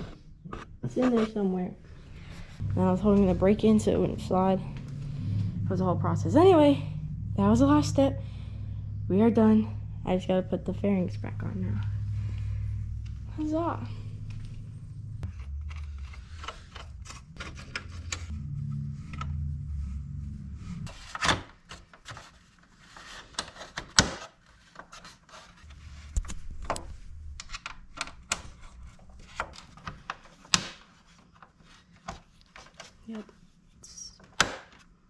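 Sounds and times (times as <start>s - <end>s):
low rumble: 1.7s - 20.9s, 25.7s - 30.1s.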